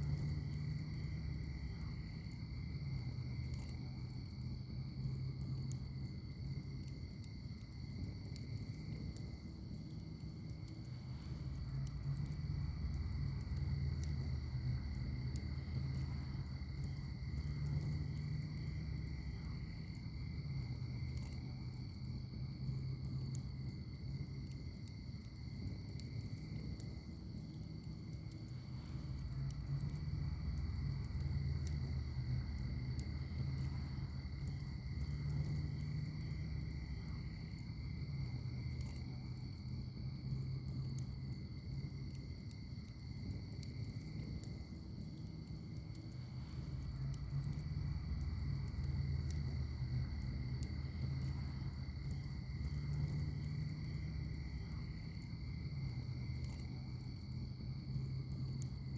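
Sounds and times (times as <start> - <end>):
wood fire crackling: 0.0 - 58.9.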